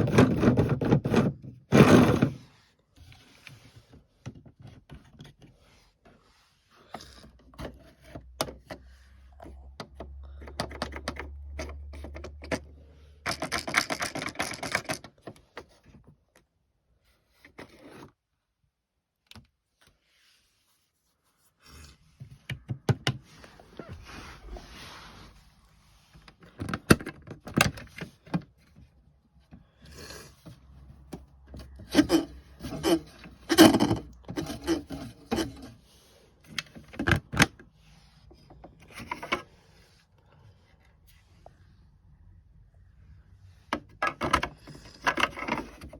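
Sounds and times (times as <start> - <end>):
plastic toys clicking and scraping: 0.0 - 5.8, 6.8 - 15.9, 29.5 - 39.9, 43.6 - 45.9
plastic rattling: 13.2 - 15.4.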